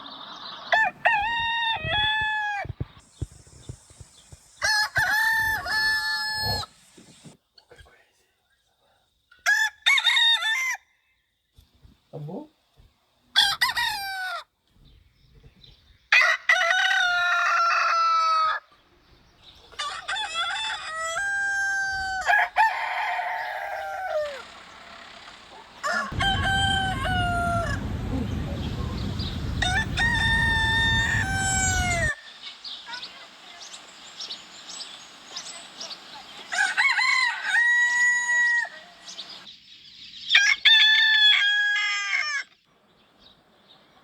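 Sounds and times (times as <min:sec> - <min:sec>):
roosters crowing: 0:00.1 - 0:07.4, 0:09.4 - 0:10.8, 0:13.4 - 0:14.5, 0:16.1 - 0:18.7, 0:19.7 - 0:39.5, 0:40.3 - 0:42.6
low rumble: 0:26.1 - 0:32.1.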